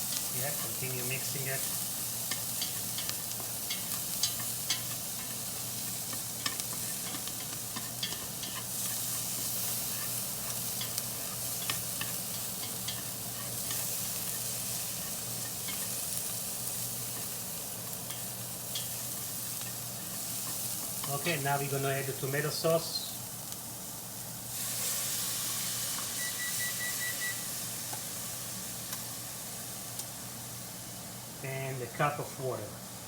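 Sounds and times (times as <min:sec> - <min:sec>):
utensil scraping the pan: 0:00.0 - 0:16.0
herbs sizzling in oil: 0:00.0 - 0:33.0.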